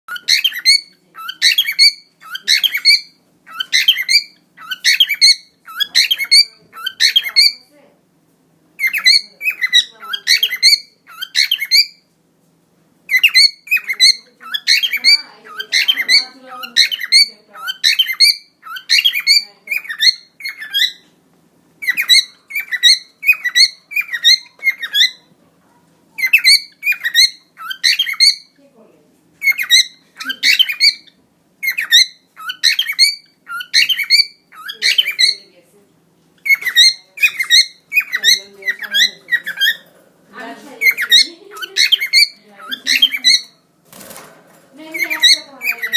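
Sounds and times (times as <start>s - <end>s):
cockatiel whistling chirps: 0.1s - 7.6s, 13.1s - 21.0s, 21.8s - 25.2s, 26.2s - 28.5s, 29.4s - 35.4s, 36.4s - 39.8s.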